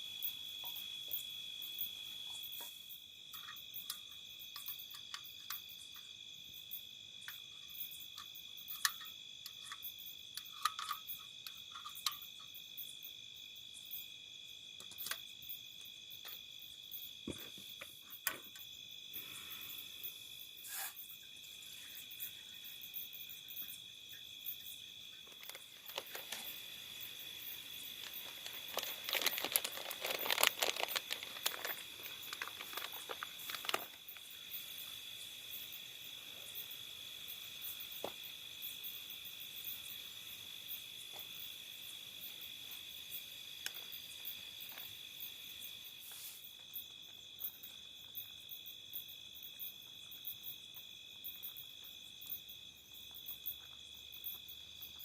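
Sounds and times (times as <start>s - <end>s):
crickets chirring: 0.0s - 55.0s
rustling and crinkling handling noise: 25.2s - 34.4s.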